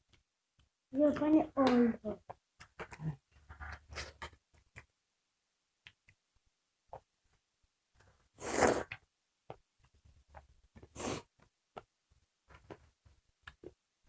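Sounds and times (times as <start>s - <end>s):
loud breathy sucking noise: 8.4s - 8.9s.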